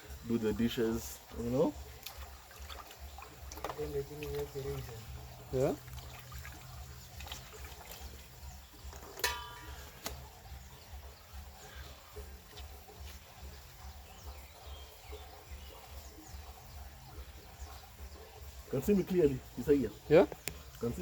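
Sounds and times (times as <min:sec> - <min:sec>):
low pulsing background: 0:00.0 - 0:21.0
utensil clinking: 0:08.8 - 0:10.3.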